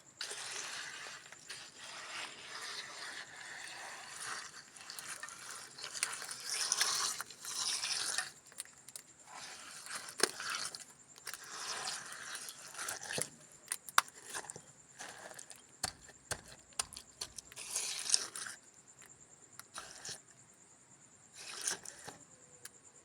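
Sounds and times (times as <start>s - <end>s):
trowel scraping mortar: 0.1s - 20.3s, 21.4s - 22.3s
sharp taps on bricks: 15.8s - 17.5s.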